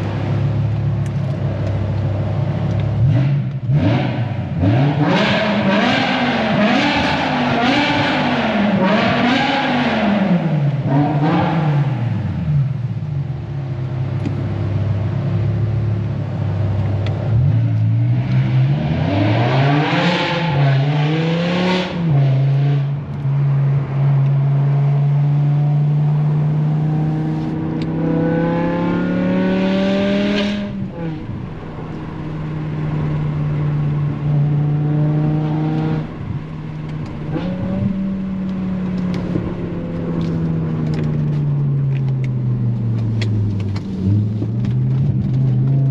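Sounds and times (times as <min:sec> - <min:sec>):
car engine accelerating through gears: 0:00.0 - 0:12.8, 0:16.4 - 0:45.9.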